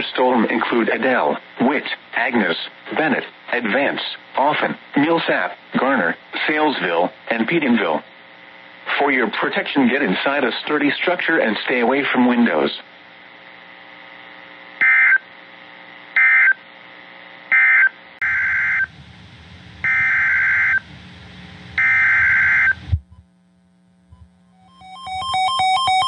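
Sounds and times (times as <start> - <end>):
faint steady hum: 0.0 - 26.0
digital data tone bursts: 21.8 - 22.8.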